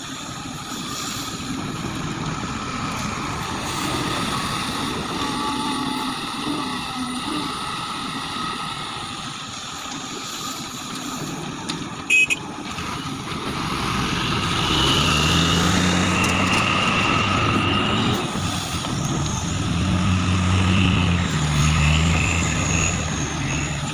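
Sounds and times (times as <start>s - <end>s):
heavy diesel engine running: 0.0s - 23.9s.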